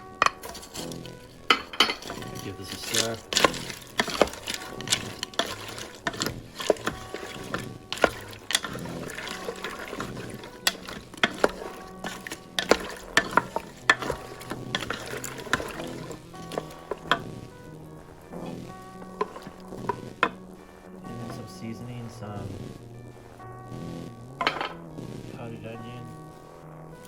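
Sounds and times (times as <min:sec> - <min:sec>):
liquid sloshing: 0:00.3 - 0:20.4
spoon knocking against pot: 0:01.5 - 0:17.2, 0:19.0 - 0:20.4, 0:24.4 - 0:24.8.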